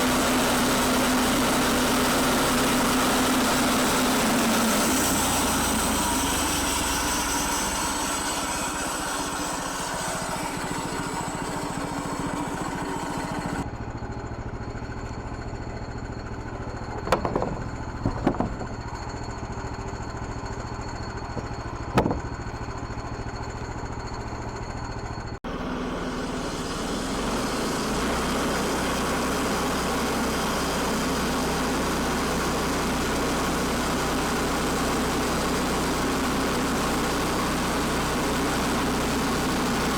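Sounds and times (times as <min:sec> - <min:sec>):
sawmill engine running: 0:00.0 - 0:39.9
sharp knocks: 0:16.9 - 0:18.9, 0:21.3 - 0:22.4.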